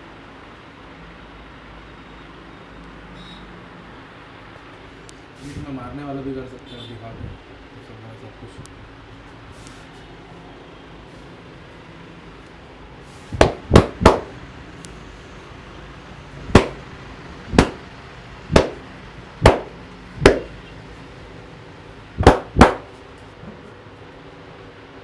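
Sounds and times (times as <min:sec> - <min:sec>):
hands slapping a body: 0:13.4 - 0:14.3, 0:16.6 - 0:16.8, 0:17.6 - 0:17.8, 0:18.5 - 0:18.8, 0:19.4 - 0:20.5, 0:22.2 - 0:22.9.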